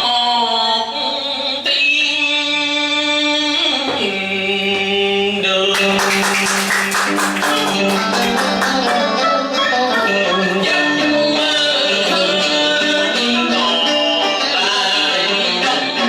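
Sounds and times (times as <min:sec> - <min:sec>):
person singing: 0:00.0 - 0:16.0
latin band music: 0:07.0 - 0:16.0.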